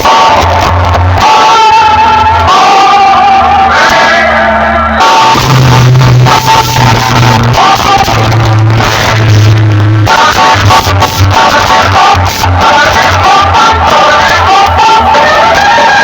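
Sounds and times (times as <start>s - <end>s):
deep booming bass notes: 0.0s - 16.0s
loud music with sung vocal: 0.0s - 16.0s.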